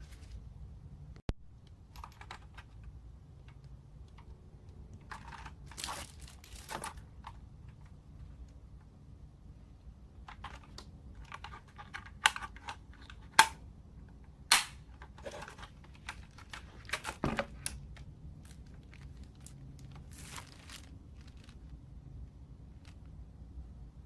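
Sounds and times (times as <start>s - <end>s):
packaging crinkling: 5.2s - 7.0s, 18.4s - 21.8s.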